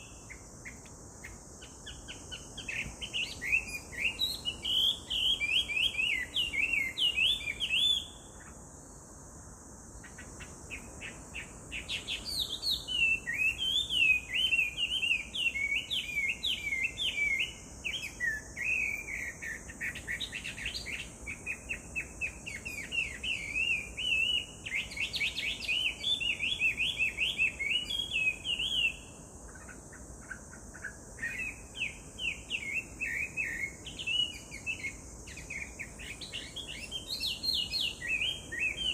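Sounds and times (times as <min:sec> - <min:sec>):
songbird whistling: 0:02.6 - 0:08.2, 0:11.8 - 0:21.1, 0:30.8 - 0:38.9.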